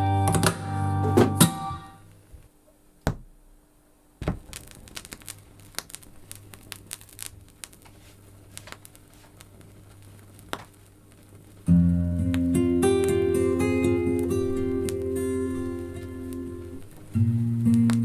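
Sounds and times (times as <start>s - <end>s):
vinyl crackles and pops: 0.0s - 18.0s
thump: 1.0s - 1.6s, 3.1s - 3.3s, 4.2s - 4.9s.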